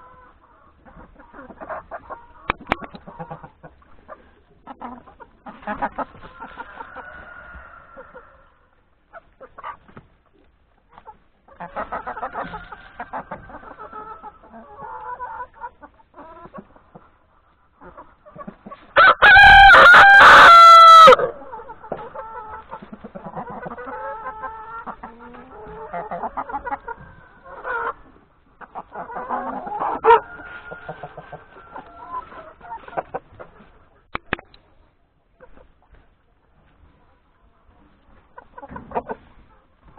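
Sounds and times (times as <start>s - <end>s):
hens clucking: 0.0s - 39.9s
rooster crowing: 6.7s - 8.6s, 19.0s - 21.4s.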